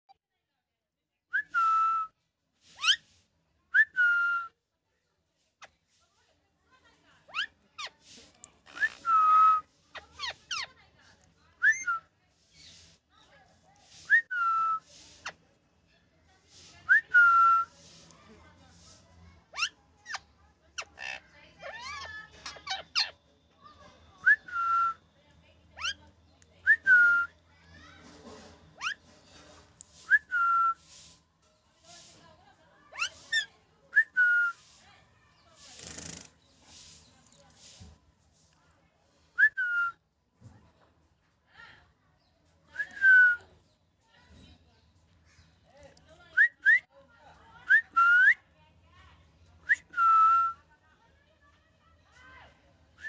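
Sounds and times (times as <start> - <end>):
parrot squawks: 19.5 - 23.2.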